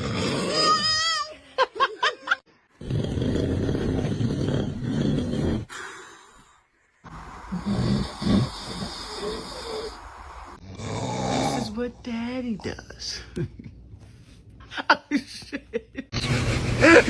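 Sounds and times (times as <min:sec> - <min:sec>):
man snoring loudly: 0:07.1 - 0:11.8.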